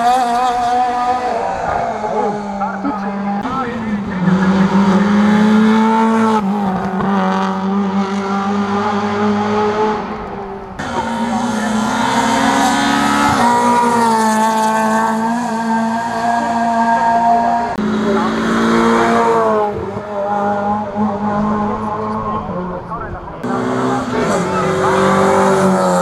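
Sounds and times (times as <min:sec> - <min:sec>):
rally car engine at high revs: 0:00.0 - 0:26.0.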